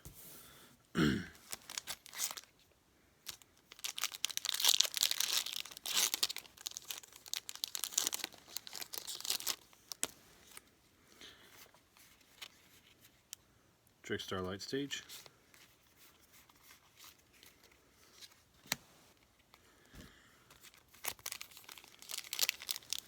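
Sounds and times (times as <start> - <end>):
foil pack tearing open: 1.4 - 2.5, 3.3 - 10.1, 20.7 - 23.0
foil wrapper crinkling: 1.4 - 10.6, 20.6 - 23.0.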